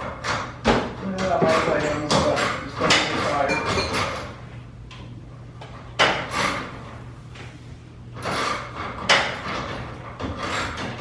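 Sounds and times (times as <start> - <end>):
steady low hum: 0.0 - 11.0
rattling and scraping: 8.1 - 11.0.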